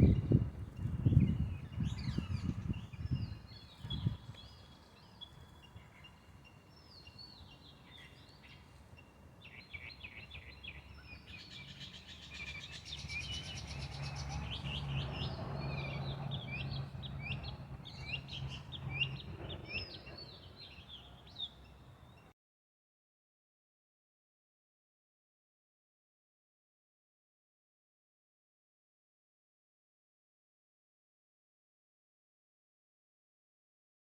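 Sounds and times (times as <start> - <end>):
small birds chirping: 0.1 - 22.3.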